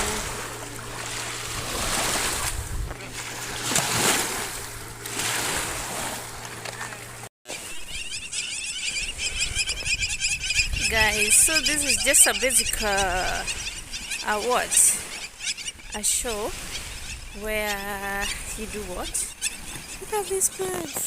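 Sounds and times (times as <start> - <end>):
waves splashing against shore: 0.0 - 7.6.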